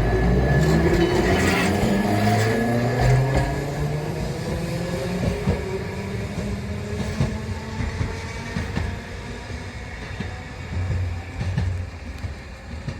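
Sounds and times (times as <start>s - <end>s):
tram wheels clacking over rail joints: 0.0s - 12.9s.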